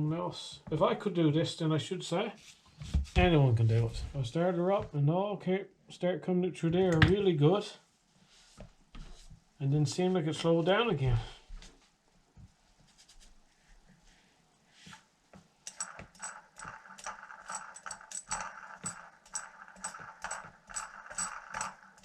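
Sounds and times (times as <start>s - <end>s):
metallic clicks and rattles: 15.7s - 22.0s.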